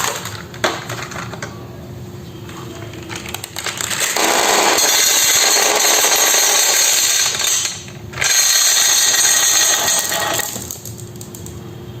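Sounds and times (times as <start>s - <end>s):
marbles rattling down wooden run: 3.4s - 11.4s.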